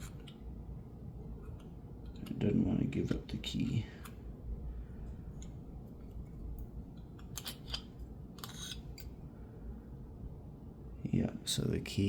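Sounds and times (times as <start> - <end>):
metallic lock clicks and scrapes: 7.2 - 9.1.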